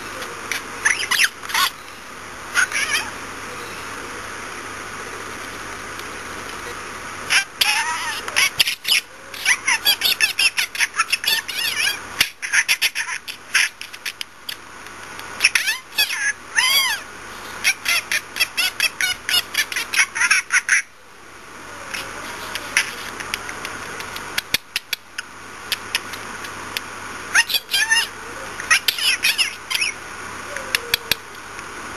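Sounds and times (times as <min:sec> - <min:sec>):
budgerigars chattering: 0:00.0 - 0:01.9, 0:07.3 - 0:14.2, 0:15.4 - 0:20.9, 0:27.4 - 0:30.0.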